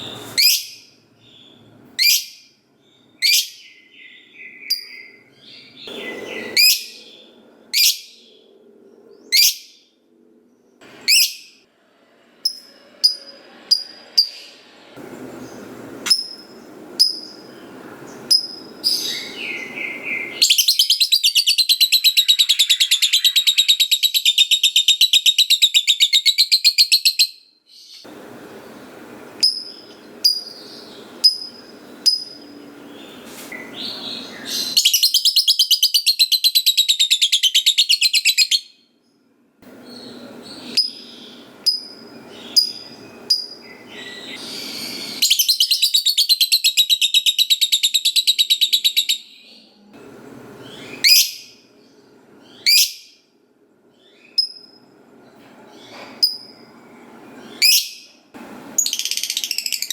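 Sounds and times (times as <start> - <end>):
bird chattering trill: 16.1 - 17.6.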